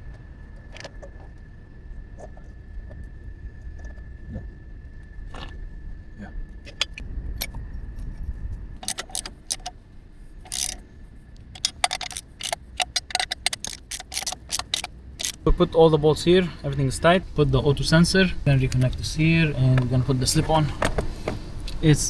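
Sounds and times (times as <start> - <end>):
metal hand tools clinking on bolts: 8.8 - 9.7, 10.4 - 10.8, 11.6 - 15.6.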